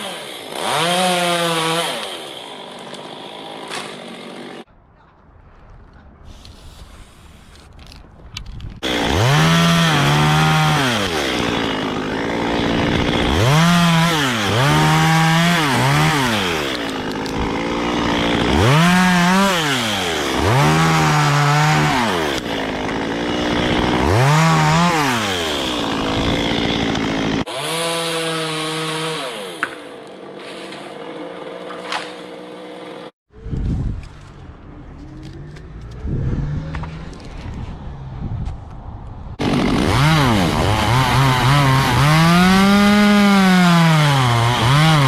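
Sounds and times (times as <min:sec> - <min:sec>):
chainsaw cutting wood: 0:00.0 - 0:04.7, 0:08.8 - 0:33.2, 0:39.4 - 0:45.0.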